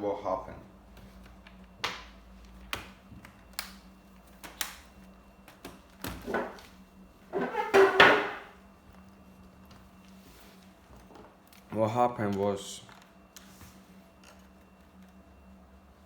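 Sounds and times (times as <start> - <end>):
plastic scraping and clattering: 6.2 - 6.6, 7.3 - 8.6.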